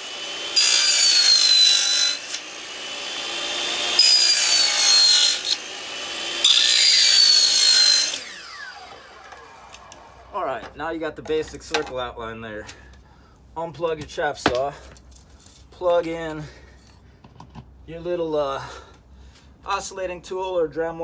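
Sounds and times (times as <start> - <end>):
mitre saw cutting floorboard: 0.0 - 10.4.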